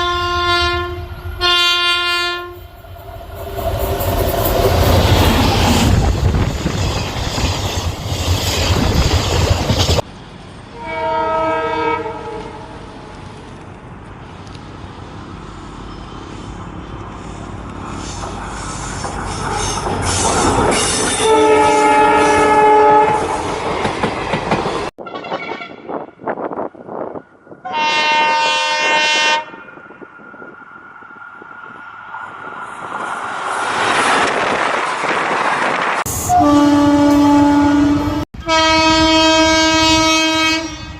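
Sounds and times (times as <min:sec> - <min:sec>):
locomotive horn blast: 0:00.0 - 0:02.7, 0:10.8 - 0:12.7, 0:21.1 - 0:23.4, 0:25.0 - 0:26.3, 0:27.6 - 0:29.7, 0:36.1 - 0:40.9
train rumbling past: 0:00.0 - 0:40.9
clattering train wheels: 0:02.6 - 0:10.1, 0:17.0 - 0:26.6.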